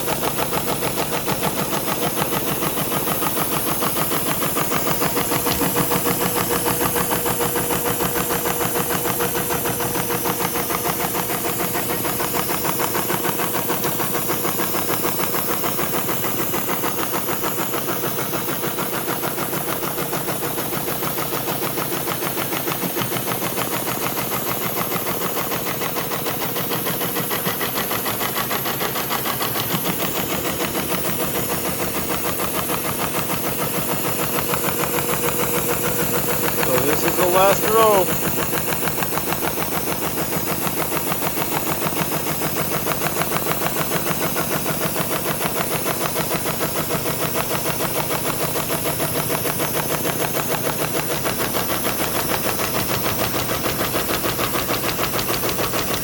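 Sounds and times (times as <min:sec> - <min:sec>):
sewing machine stitching: 0:03.9 - 0:08.0.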